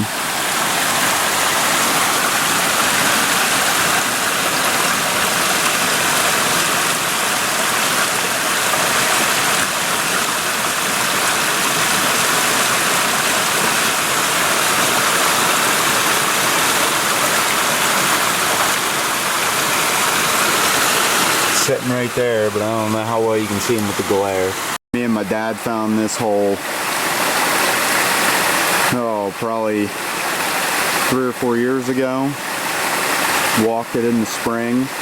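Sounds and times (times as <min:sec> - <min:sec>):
stream flowing over rocks: 0:00.0 - 0:35.0.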